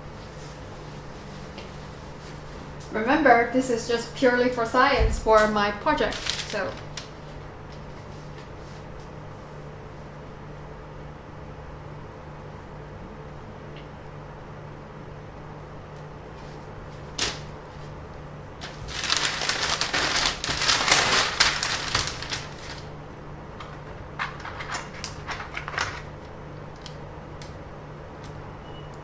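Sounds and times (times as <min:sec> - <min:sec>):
crackling rustle: 0:05.4 - 0:09.6, 0:15.9 - 0:23.0.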